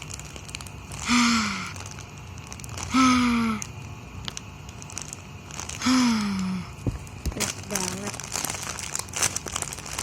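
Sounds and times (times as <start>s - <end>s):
girl sighing with pleasure: 1.0s - 1.7s, 2.9s - 3.6s, 5.8s - 6.7s.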